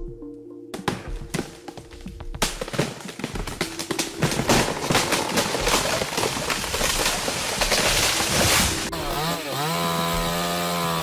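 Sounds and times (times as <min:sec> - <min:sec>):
crackling rush: 0:02.6 - 0:09.0
chainsaw engine at high revs: 0:08.4 - 0:11.0.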